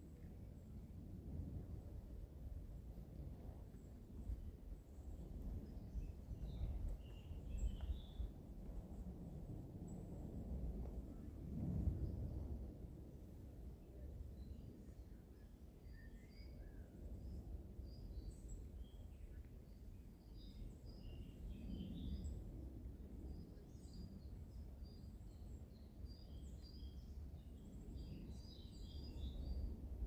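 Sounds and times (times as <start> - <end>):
steady low rumble: 0.0 - 15.7
songbirds chirping and twittering: 3.4 - 9.1, 13.8 - 30.0.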